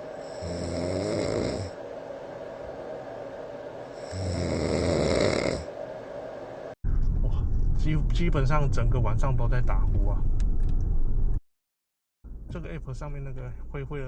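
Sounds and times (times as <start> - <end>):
white noise machine hiss: 0.0 - 6.8
man snoring: 0.2 - 1.8, 4.0 - 5.7.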